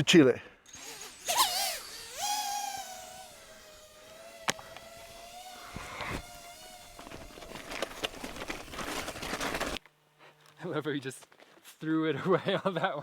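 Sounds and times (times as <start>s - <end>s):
drone propellers whining: 0.7s - 9.8s.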